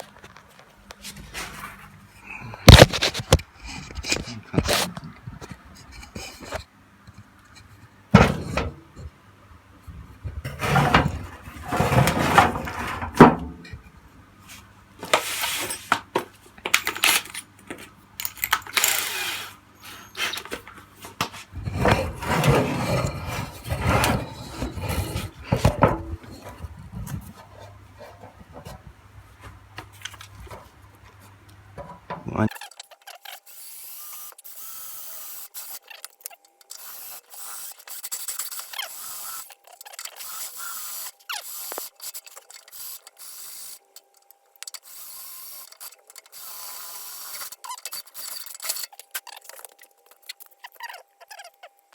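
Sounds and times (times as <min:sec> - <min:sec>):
tools clattering on workbench: 0:08.2 - 0:08.8, 0:15.0 - 0:19.1, 0:20.2 - 0:26.7.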